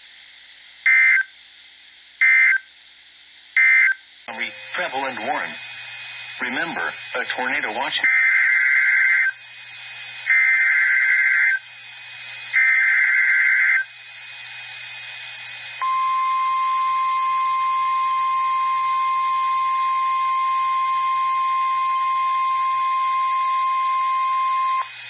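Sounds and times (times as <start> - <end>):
faint radio hiss: 0.0 - 25.0
screeching data tones: 0.8 - 1.4, 2.2 - 2.8, 3.5 - 5.6, 6.4 - 9.4, 10.2 - 11.7, 12.5 - 13.9
steady warning alarm tone: 0.8 - 1.4, 2.2 - 2.7, 3.6 - 5.6, 6.4 - 9.4, 10.2 - 11.7, 12.5 - 13.9, 15.8 - 25.0.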